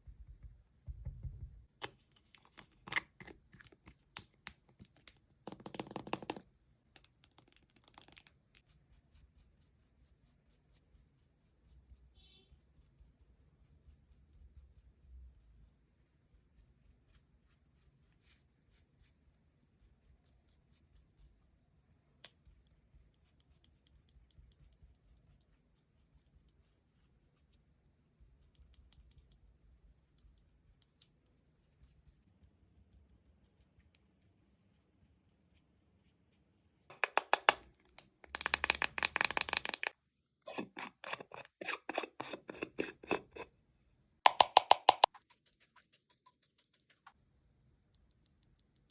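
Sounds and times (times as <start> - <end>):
scratching and tapping on a melon: 0.1 - 8.7, 36.9 - 43.5, 44.3 - 47.2.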